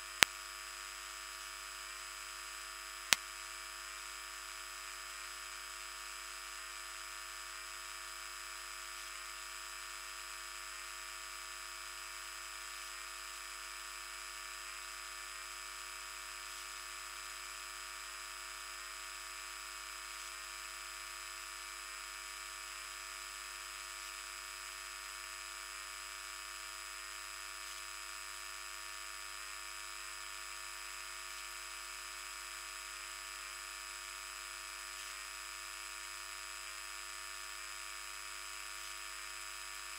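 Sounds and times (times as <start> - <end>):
electrical buzz with hiss: 31.3 - 39.9.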